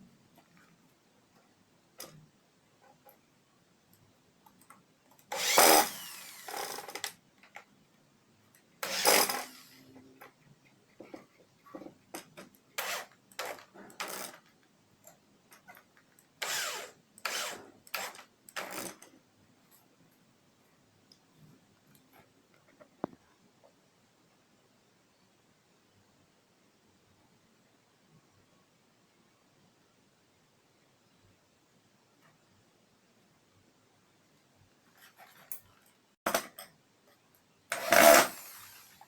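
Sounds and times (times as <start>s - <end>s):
electric drill spinning saw blade: 5.3s - 7.1s, 8.8s - 9.9s, 12.8s - 14.3s, 16.4s - 18.9s, 37.7s - 39.0s.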